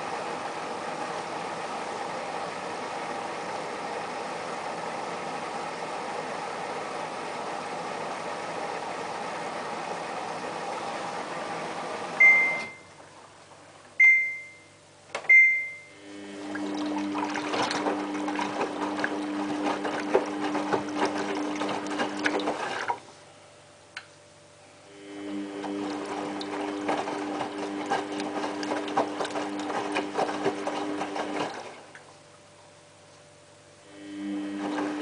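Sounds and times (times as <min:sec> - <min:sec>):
washing machine whirring hum: 0:00.0 - 0:35.0
short high beeps: 0:12.2 - 0:12.9, 0:14.0 - 0:14.7, 0:15.3 - 0:16.0.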